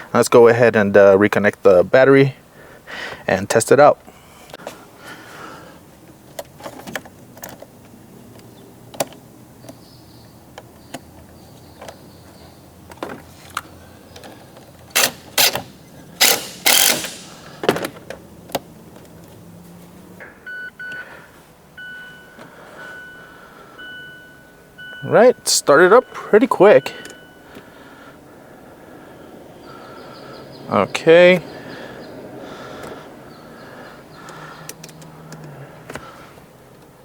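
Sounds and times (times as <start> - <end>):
tools and parts clunking: 6.3 - 9.8, 10.6 - 19.4
car electronic chime: 20.2 - 21.0, 21.8 - 27.5.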